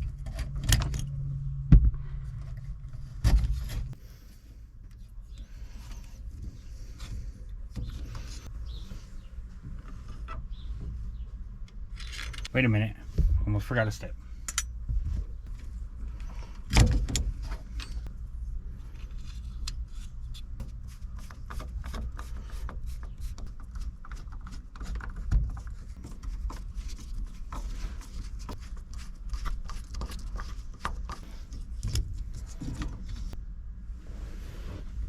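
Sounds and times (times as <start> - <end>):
tools and metal parts rattling: 11.9 - 12.6.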